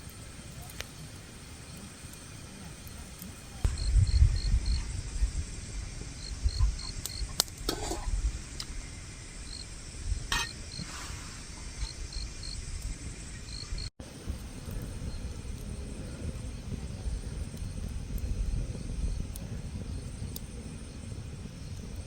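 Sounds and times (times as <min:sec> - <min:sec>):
insect chirping in pulses: 0:00.0 - 0:07.4, 0:08.0 - 0:13.9
low rumble: 0:03.6 - 0:06.9.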